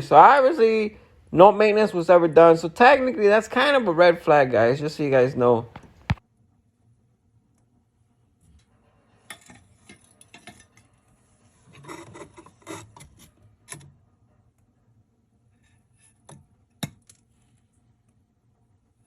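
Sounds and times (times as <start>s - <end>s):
faint scraping and rubbing: 8.4s - 13.5s.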